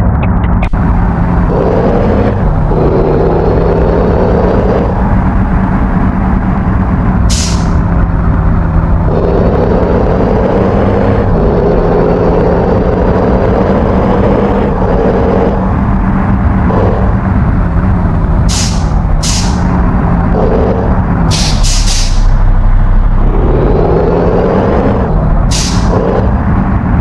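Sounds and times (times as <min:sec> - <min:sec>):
bus engine running: 0:00.0 - 0:27.0
air hiss: 0:07.3 - 0:07.8, 0:18.5 - 0:19.6, 0:21.3 - 0:22.3.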